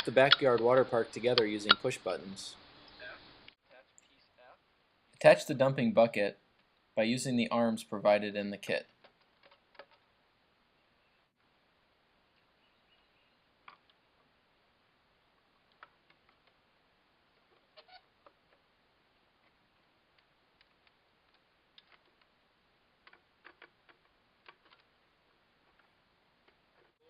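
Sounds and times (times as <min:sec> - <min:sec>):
plastic parts clicking and tapping: 0:08.9 - 0:10.1, 0:19.4 - 0:22.4, 0:23.0 - 0:26.9.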